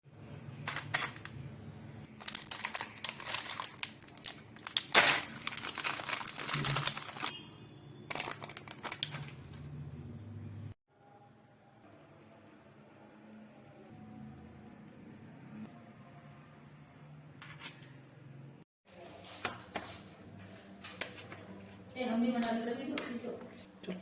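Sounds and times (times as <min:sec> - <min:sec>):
packaging crinkling and rustling: 0:02.1 - 0:07.4, 0:08.1 - 0:09.6.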